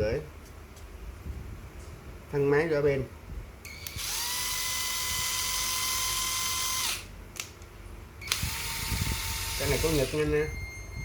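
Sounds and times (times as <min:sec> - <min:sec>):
cordless drill motor whine: 0:03.6 - 0:07.1, 0:08.2 - 0:11.0
drill click: 0:03.7 - 0:07.6, 0:08.2 - 0:10.2.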